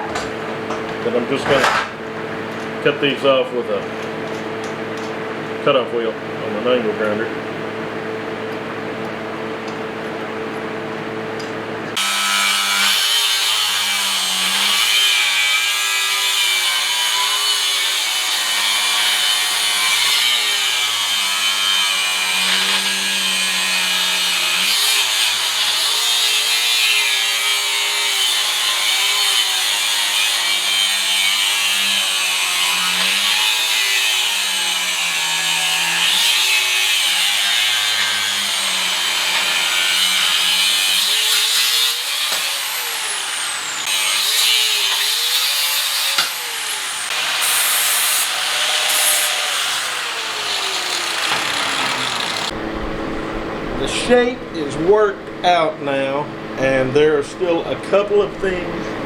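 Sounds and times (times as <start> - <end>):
angle grinder cutting steel: 12.0 - 52.6
steady hum: 52.4 - 59.0.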